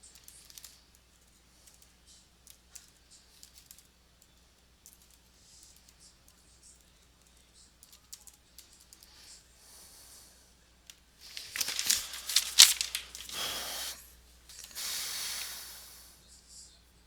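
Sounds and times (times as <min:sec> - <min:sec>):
wrapping rustling and crinkling: 0:11.2 - 0:15.6.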